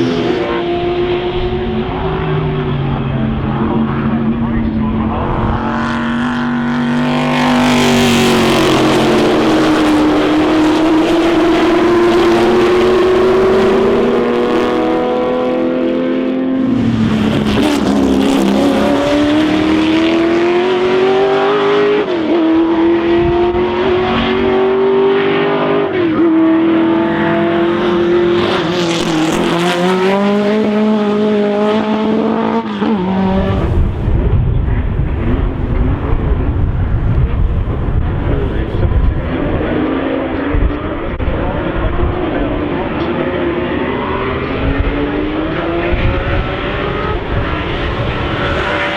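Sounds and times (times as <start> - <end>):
racing car engine accelerating: 0.0 - 48.9
deep rough engine rumble: 33.2 - 43.1.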